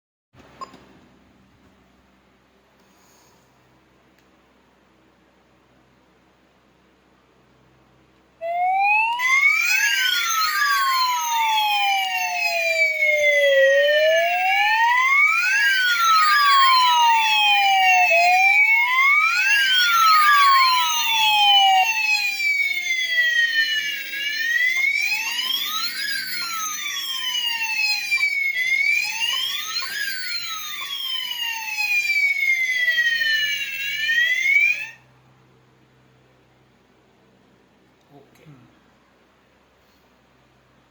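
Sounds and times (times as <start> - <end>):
fire alarm sounder wailing: 8.4 - 35.1.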